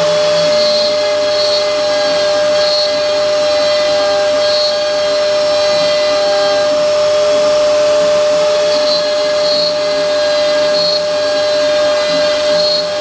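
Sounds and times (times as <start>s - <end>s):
high-pitched cutter squeals: 0.0s - 13.0s
router spindle whine: 0.0s - 13.0s.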